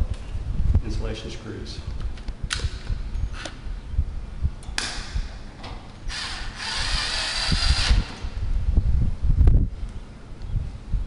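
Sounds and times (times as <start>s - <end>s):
power drill driving screws: 6.1s - 8.1s.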